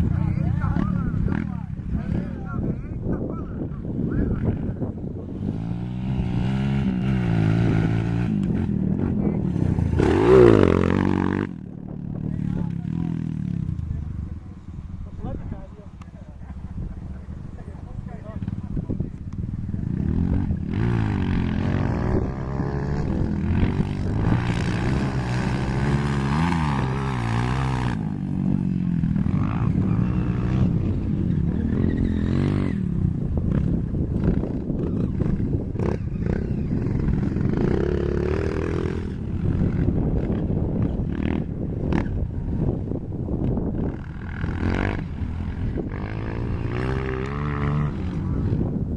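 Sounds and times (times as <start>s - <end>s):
dirt bike engine revving: 5.2s - 13.7s, 19.6s - 42.2s, 43.4s - 48.8s.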